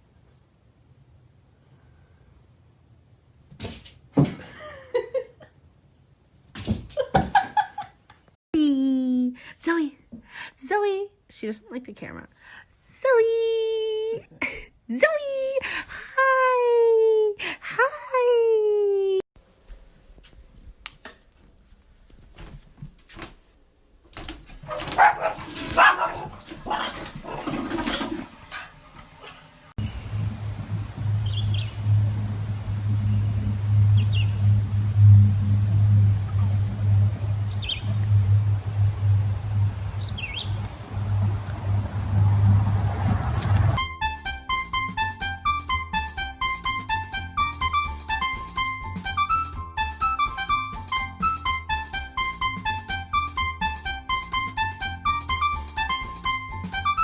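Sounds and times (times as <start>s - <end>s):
person laughing: 4.3s - 5.5s, 7.0s - 8.0s, 14.3s - 14.7s
dog barking: 24.6s - 27.0s.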